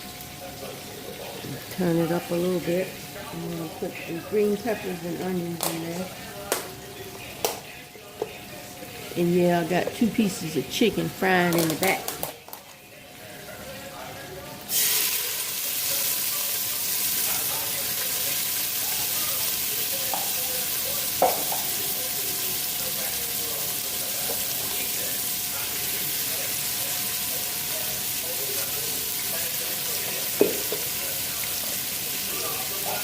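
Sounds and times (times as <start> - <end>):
vegetables sizzling in oil: 10.6 - 12.2, 14.6 - 33.0.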